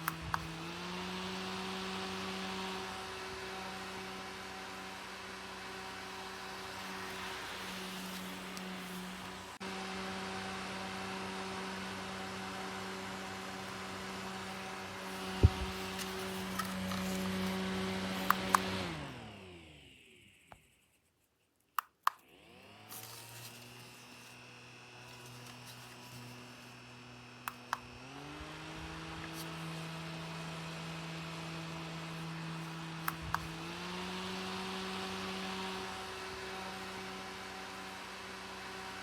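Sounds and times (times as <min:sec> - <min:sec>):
fan button clicks: 0:00.0 - 0:00.6, 0:18.1 - 0:18.8, 0:27.4 - 0:27.9, 0:33.0 - 0:33.6
small fan motor humming: 0:00.0 - 0:20.9, 0:21.7 - 0:39.0.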